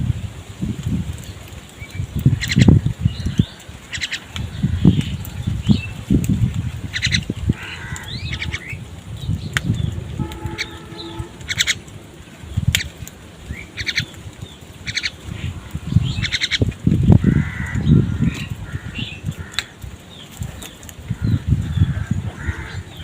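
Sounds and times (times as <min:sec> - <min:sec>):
crows calling: 0:02.3 - 0:05.4, 0:06.9 - 0:08.9, 0:10.1 - 0:12.0, 0:12.8 - 0:23.0.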